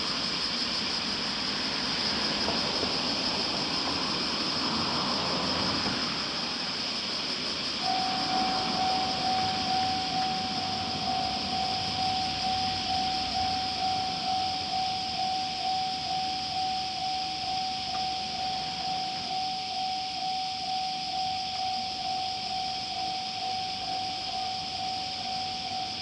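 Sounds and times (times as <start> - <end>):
outdoor background noise: 0.0 - 26.0
level crossing warning bell: 7.8 - 26.0.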